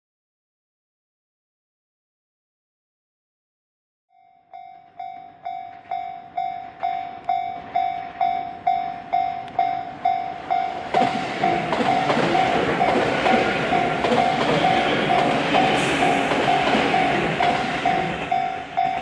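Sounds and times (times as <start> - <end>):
level-crossing bell clanging: 4.1 - 19.0
train rumbling past: 4.5 - 19.0.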